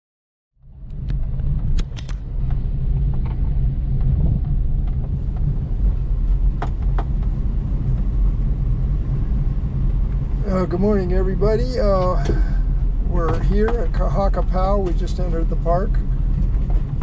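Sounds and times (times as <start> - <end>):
car driving rumble inside cabin: 0.6 - 17.0
sharp clicks or rattles: 0.9 - 3.4.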